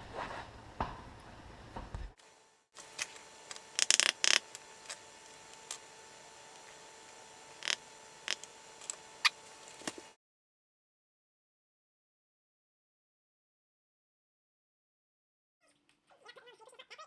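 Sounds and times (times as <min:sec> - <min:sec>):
faint steady hum: 0:01.5 - 0:10.2.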